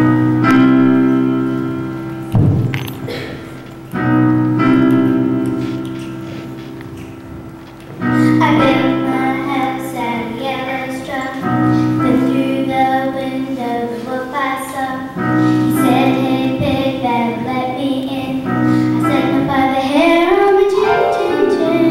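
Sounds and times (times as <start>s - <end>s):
instrumental accompaniment: 0.0s - 13.0s, 18.2s - 21.9s
children singing: 15.7s - 21.9s.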